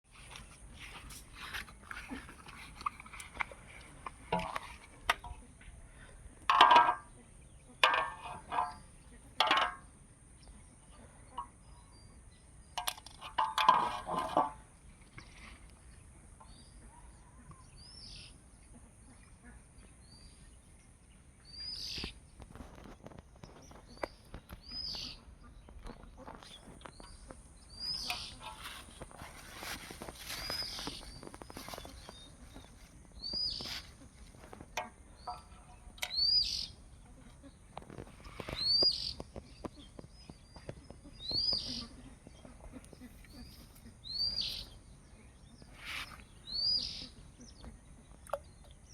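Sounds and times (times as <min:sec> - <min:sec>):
bird calling: 0:23.0 - 0:47.9.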